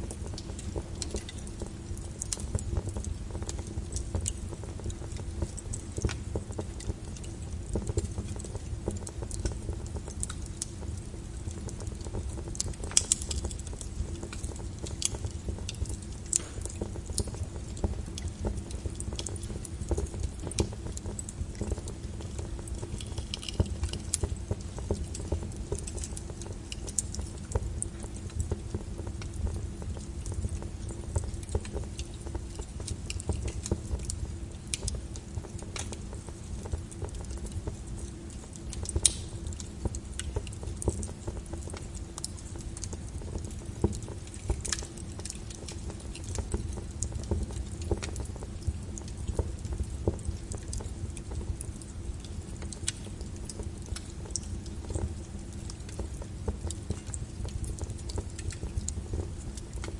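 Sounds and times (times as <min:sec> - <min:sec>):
fire crackling: 0:00.0 - 0:59.9.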